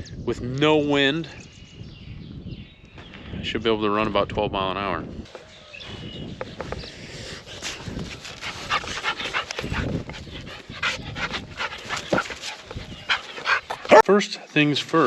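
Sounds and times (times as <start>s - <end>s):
dog panting: 7.3s - 14.0s.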